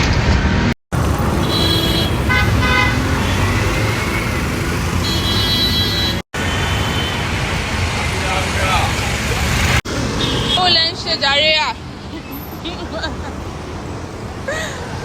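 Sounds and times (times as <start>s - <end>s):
traffic engine and road rumble: 0.0s - 15.0s
car horns tooting: 1.3s - 7.2s.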